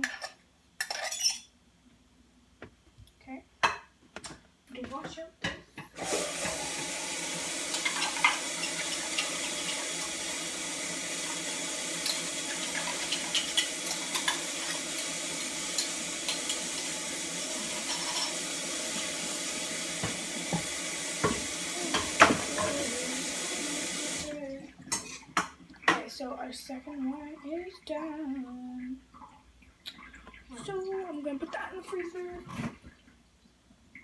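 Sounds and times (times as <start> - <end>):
tap running into sink: 5.9 - 24.4.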